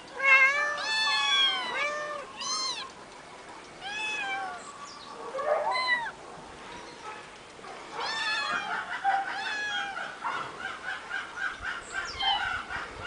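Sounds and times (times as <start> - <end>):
kittens meowing: 0.2 - 2.9, 3.8 - 4.6, 5.7 - 6.2, 8.0 - 10.2.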